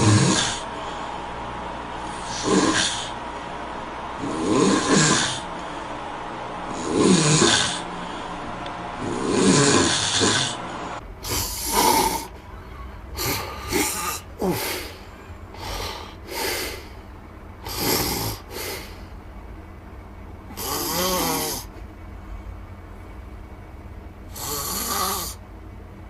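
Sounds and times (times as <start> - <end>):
loud snoring: 0.0 - 0.7, 2.1 - 3.2, 4.2 - 5.5, 6.7 - 7.9, 9.0 - 12.3, 13.2 - 15.0, 17.6 - 19.0, 20.5 - 21.7, 24.3 - 25.4.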